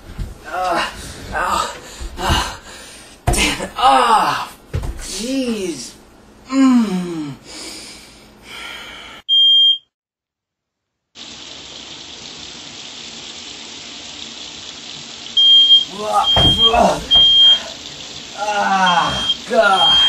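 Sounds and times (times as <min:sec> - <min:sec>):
smoke alarm beep: 0:09.3 - 0:09.9, 0:15.4 - 0:17.7, 0:18.9 - 0:20.0.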